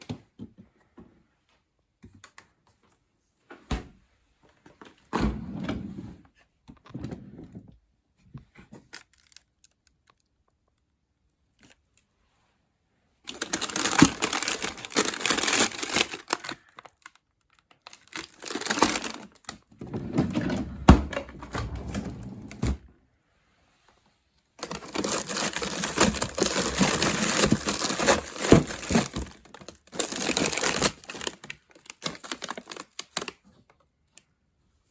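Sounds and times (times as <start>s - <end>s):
plastic bags crinkling: 8.9s - 10.2s, 13.2s - 19.7s, 24.6s - 33.4s.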